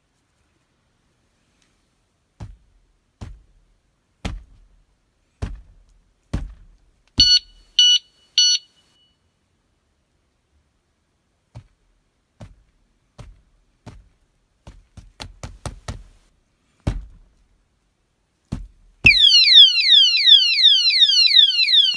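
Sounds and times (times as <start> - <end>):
alarm siren of falling sweeps: 19.1 - 21.9.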